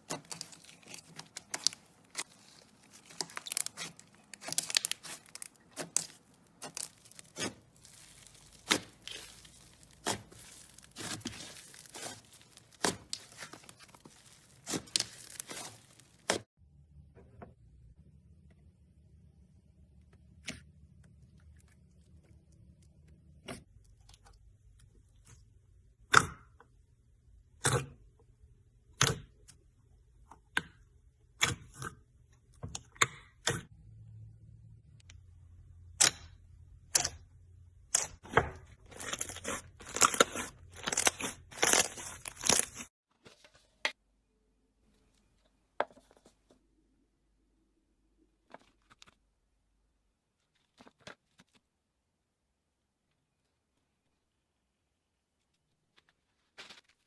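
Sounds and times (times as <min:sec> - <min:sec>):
slime popping and crackling: 0:00.0 - 0:16.4, 0:38.9 - 0:42.9.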